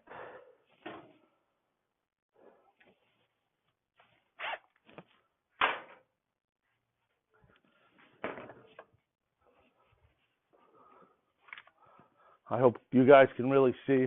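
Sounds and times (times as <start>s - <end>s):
knocks and clatter of scooter parts: 8.2s - 9.0s.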